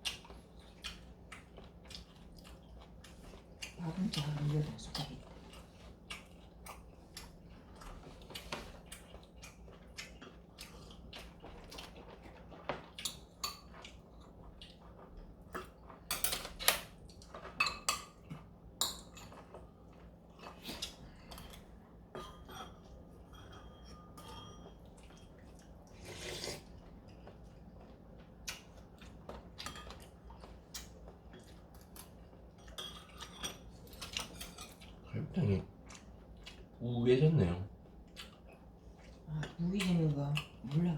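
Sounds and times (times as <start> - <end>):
utensils clinking against bowls: 22.1 - 25.3, 32.6 - 34.9.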